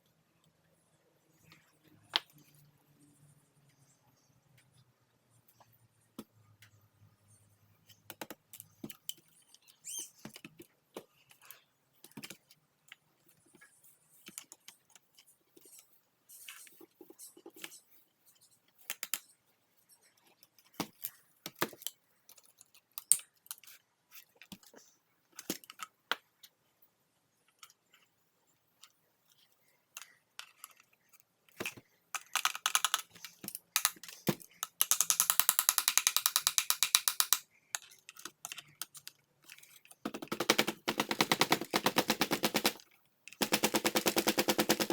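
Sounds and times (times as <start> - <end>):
plastic parts clicking and knocking: 7.8 - 15.9, 18.7 - 19.3, 20.2 - 24.8, 25.4 - 26.4, 28.8 - 44.9
ratchet clicks: 34.6 - 37.4.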